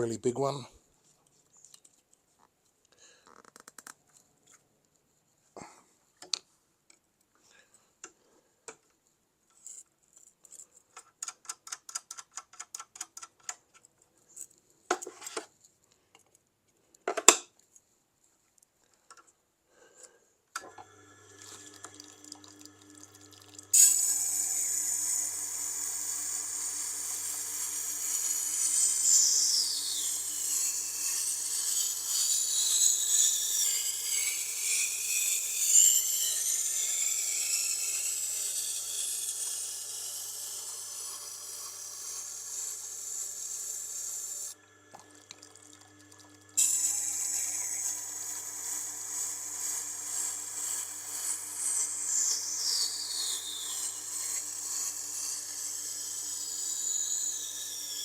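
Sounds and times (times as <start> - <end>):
grinder motor humming: 20.6 - 58.0.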